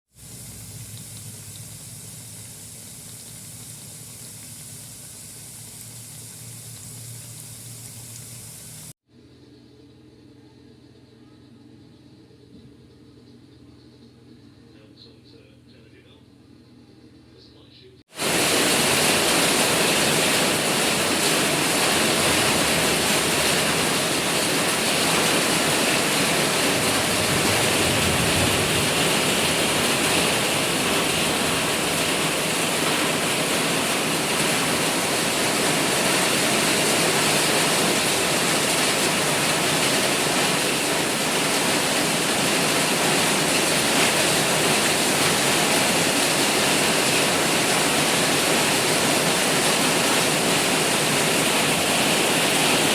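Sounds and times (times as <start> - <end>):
heavy rain pouring: 18.1 - 52.9.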